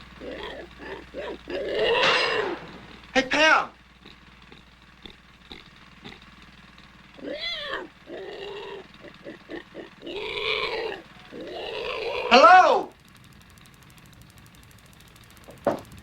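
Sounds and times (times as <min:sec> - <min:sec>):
pig-like squealing: 0:00.2 - 0:03.8, 0:07.2 - 0:12.9
short grunts: 0:00.2 - 0:06.3.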